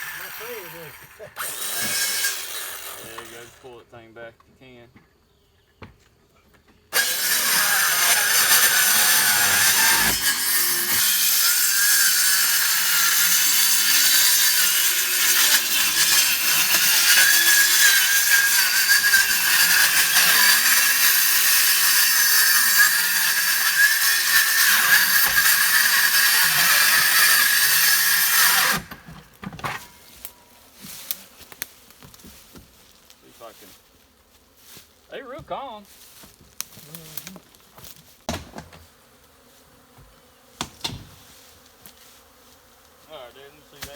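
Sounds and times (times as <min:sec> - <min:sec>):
circular saw cutting wood: 0:00.0 - 0:03.8, 0:06.9 - 0:31.1.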